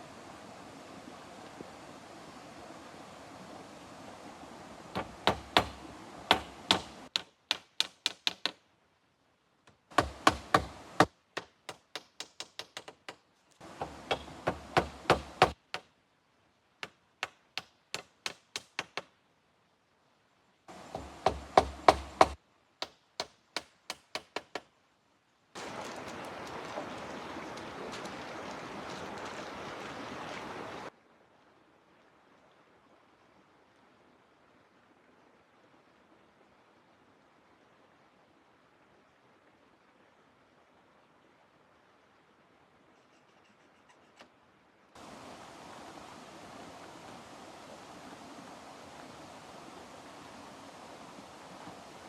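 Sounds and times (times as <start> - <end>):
tool knocking on wood: 5.0 - 8.6, 9.9 - 15.6, 17.2 - 19.1, 20.8 - 24.7.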